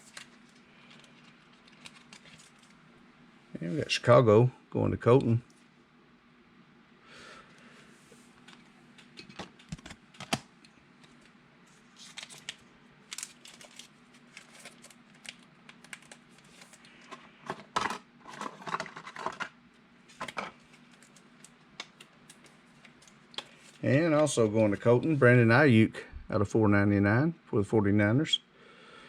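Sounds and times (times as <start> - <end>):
trading cards clicking and rustling: 0.0 - 2.8.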